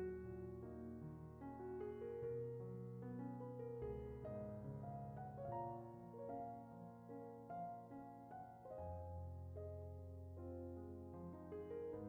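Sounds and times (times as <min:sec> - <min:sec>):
soft piano music: 0:00.0 - 0:12.0.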